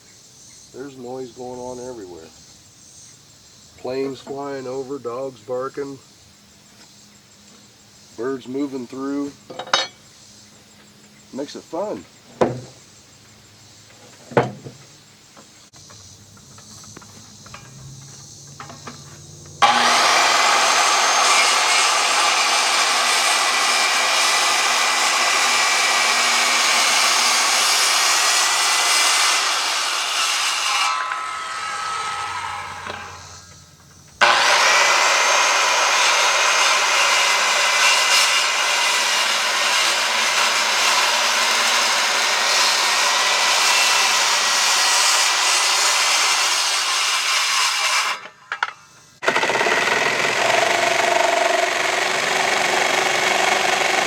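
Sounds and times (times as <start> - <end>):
power saw cutting lumber: 11.4 - 12.8, 18.0 - 33.5, 34.2 - 54.0
single knock: 12.4 - 12.8.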